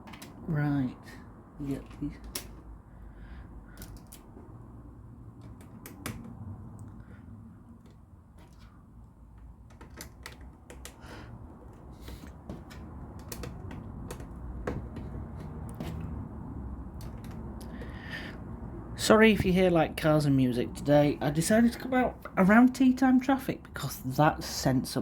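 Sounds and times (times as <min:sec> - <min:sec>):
plastic pieces clicking and snapping: 0:03.7 - 0:04.3, 0:09.7 - 0:15.9.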